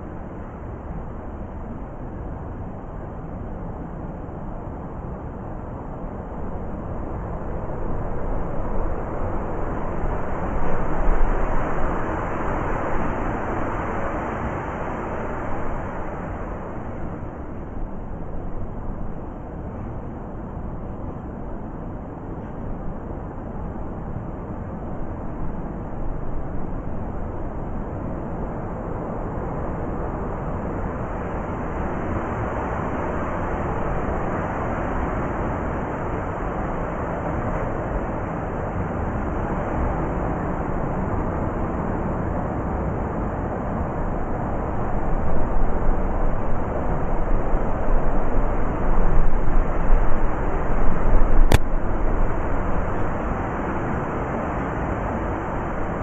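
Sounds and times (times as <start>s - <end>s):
blizzard wind gusting: 0.0s - 56.0s
sharp click: 51.4s - 51.7s.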